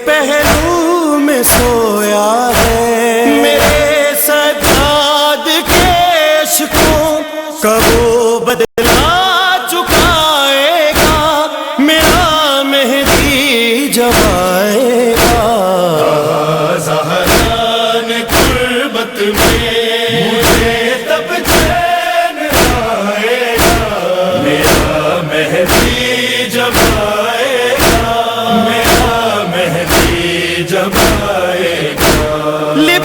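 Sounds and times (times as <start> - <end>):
chorus chanting without words: 0.0 - 8.2, 8.8 - 33.0
percussive beat: 0.4 - 6.1, 6.7 - 7.1, 7.8 - 8.2, 8.8 - 9.3, 9.9 - 11.4, 12.0 - 12.4, 13.0 - 13.5, 14.1 - 14.6, 15.2 - 15.6, 17.2 - 18.8, 19.4 - 23.0, 23.6 - 33.0.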